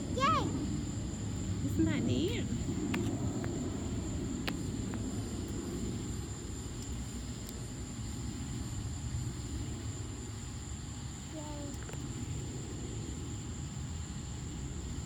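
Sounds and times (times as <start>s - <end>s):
low rolling thunder: 0.0s - 6.7s.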